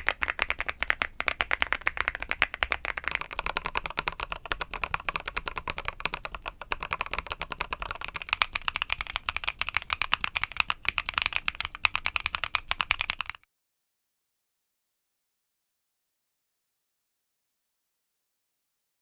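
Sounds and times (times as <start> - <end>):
fast typing on mechanical keyboard: 0.0 - 13.4.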